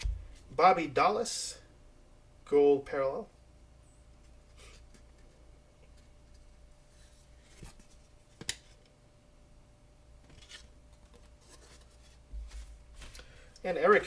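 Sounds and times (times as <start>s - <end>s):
cards rustling and sliding: 10.2s - 13.3s.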